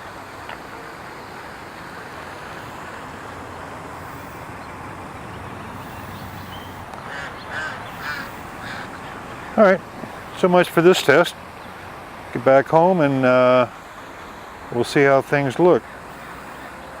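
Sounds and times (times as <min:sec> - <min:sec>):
distant road traffic hum: 0:00.0 - 0:17.0
faint bird calls: 0:02.3 - 0:10.4, 0:15.8 - 0:17.0.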